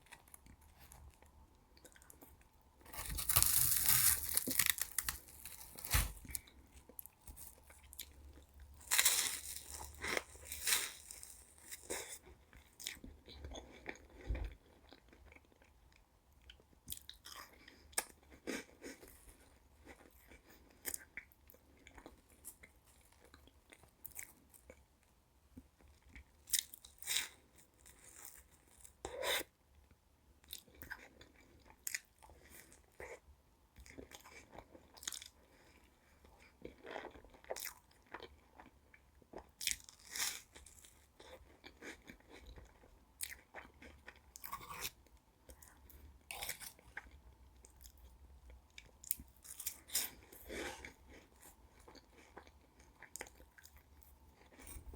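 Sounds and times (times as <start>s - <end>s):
crisp crunches of bites: 2.9s - 6.5s, 8.8s - 12.2s.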